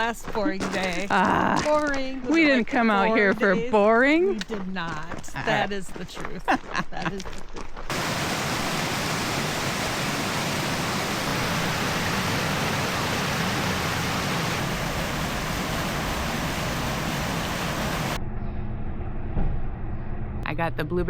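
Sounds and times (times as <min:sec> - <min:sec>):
rushing water: 0:07.9 - 0:18.2.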